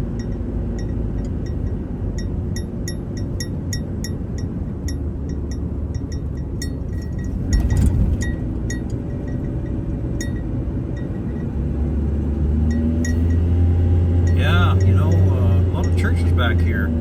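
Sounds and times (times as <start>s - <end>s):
road rumble inside vehicle: 0.0s - 17.0s
vehicle jolt: 0.0s - 17.0s
small metallic clinking: 0.2s - 11.5s, 12.7s - 13.5s.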